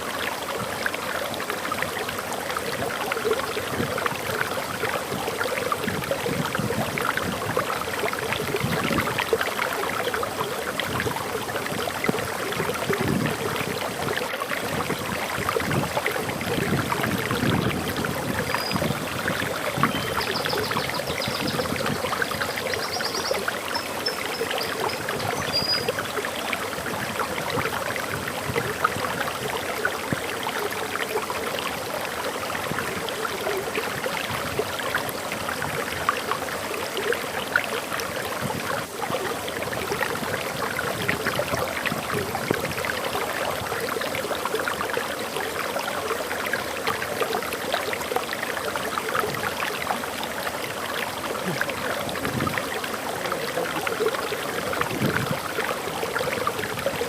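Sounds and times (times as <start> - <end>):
bird chirping and trilling: 18.4 - 19.0, 19.7 - 26.0
waterfall splashing: 47.5 - 57.0.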